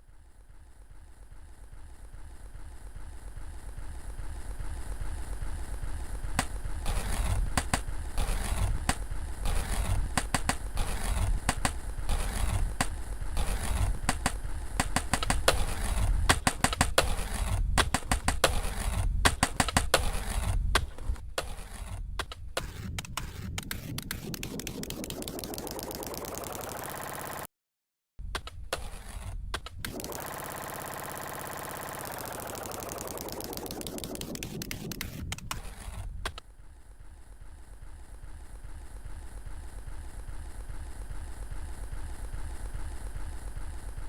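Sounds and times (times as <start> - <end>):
skateboard wheels rolling on pavement: 0.2 - 27.4, 28.2 - 44.0
skateboard clacking on ground: 6.3 - 24.4.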